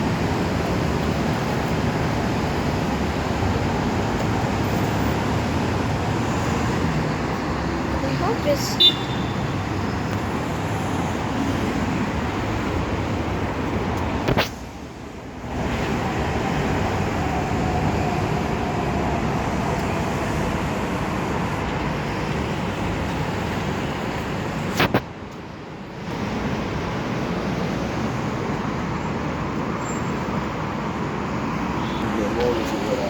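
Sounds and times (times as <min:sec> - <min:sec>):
road traffic noise: 0:00.0 - 0:33.0.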